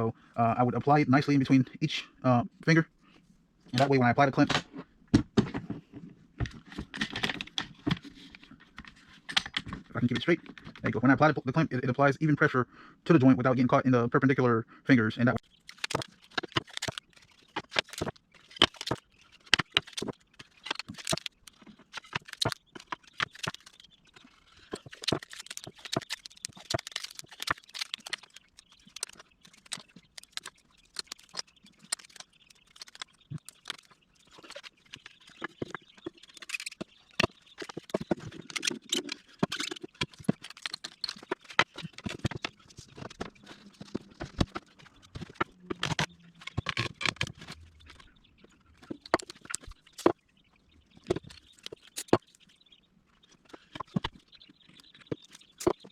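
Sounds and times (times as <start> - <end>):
wooden pieces clicking and knocking: 6.4 - 10.9, 15.4 - 48.1, 48.8 - 50.2, 53.4 - 55.9.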